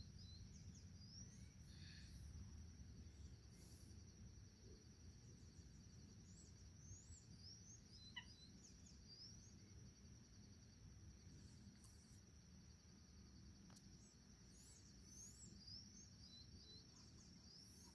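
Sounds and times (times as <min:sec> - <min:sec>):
high insect drone: 0:00.0 - 0:17.9
bird chirping: 0:05.4 - 0:09.8, 0:13.7 - 0:17.9.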